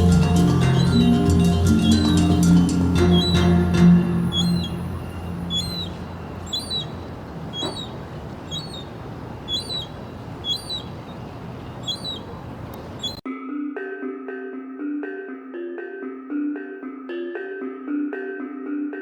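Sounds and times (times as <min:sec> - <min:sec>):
bird repeating high call: 0:00.0 - 0:13.2.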